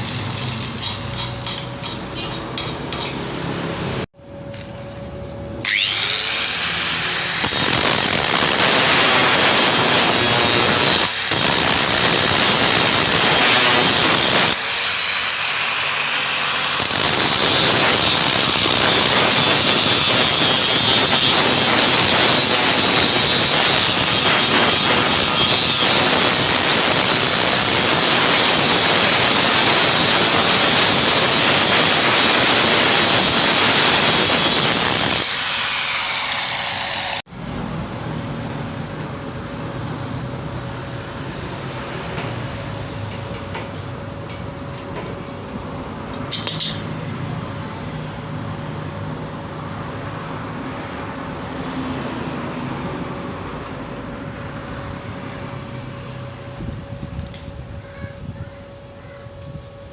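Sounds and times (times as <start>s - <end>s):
angle grinder grinding metal: 0.0s - 3.6s, 5.6s - 37.2s.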